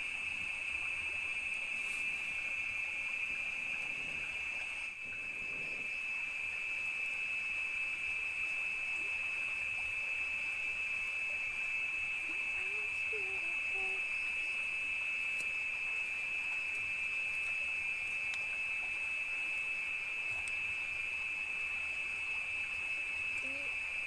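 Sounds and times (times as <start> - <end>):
faint low animal calls: 0.0 - 6.7, 22.8 - 24.0
night insects chorus: 0.0 - 24.0.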